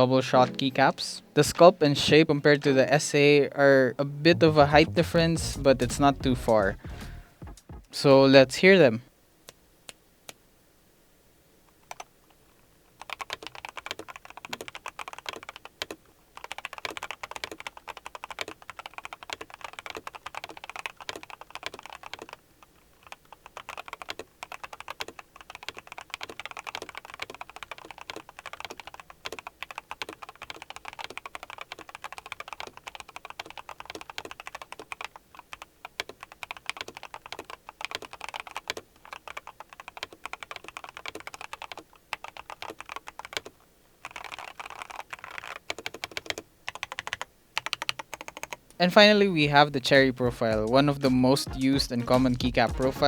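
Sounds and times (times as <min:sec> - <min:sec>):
mechanical keyboard typing: 0:11.9 - 0:12.1, 0:13.0 - 0:48.6.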